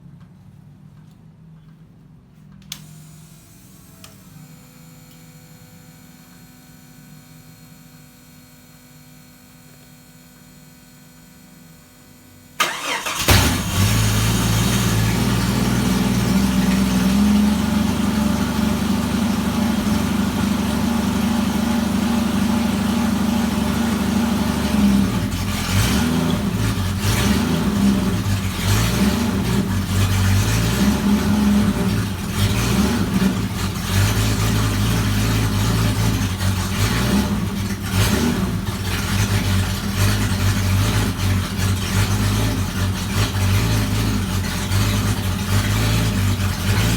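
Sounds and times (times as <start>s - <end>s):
car engine starting and running: 12.6s - 46.9s.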